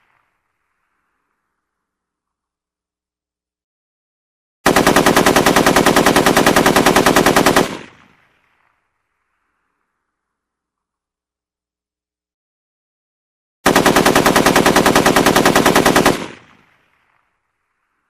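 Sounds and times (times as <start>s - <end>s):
automatic gunfire burst: 4.6s - 8.0s, 13.6s - 16.5s.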